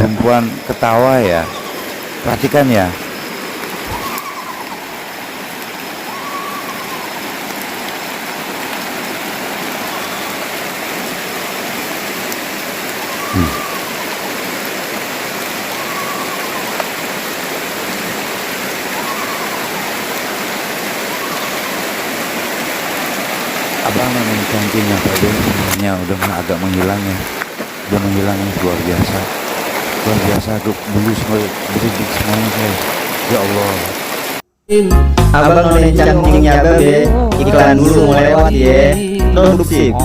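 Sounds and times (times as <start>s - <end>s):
rain hiss: 0.0s - 34.4s
faint rising and falling call: 1.2s - 2.2s, 2.9s - 8.8s, 12.8s - 14.6s, 15.3s - 17.3s, 18.6s - 24.8s.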